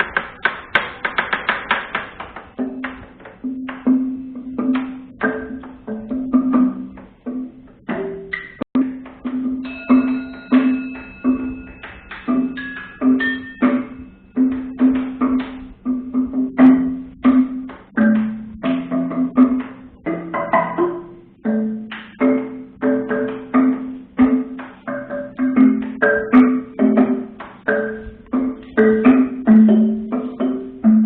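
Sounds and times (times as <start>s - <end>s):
tuned percussion rhythm: 0.0s - 31.0s
high ringing tones: 9.4s - 15.4s.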